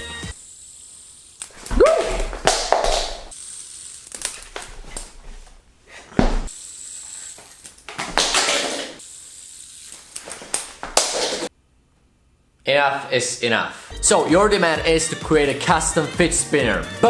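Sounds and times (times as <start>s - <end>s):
hiss: 6.5s - 7.6s.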